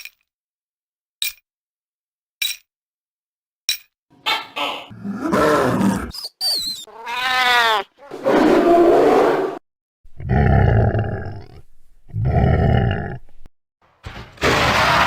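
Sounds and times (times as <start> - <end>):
monster roars: 4.9 - 6.1, 10.2 - 13.2
monster wailing cry: 4.9 - 6.1.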